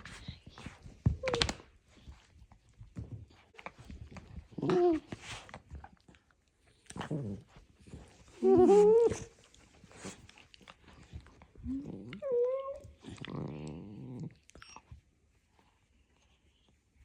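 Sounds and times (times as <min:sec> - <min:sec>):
dog whining: 0:08.3 - 0:09.5, 0:11.6 - 0:13.9
dog growling: 0:11.6 - 0:14.7.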